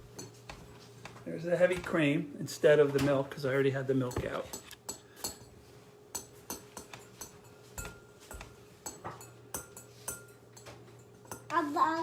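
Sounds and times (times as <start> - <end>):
dishes clinking on a counter: 0.1 - 1.9, 4.0 - 11.6.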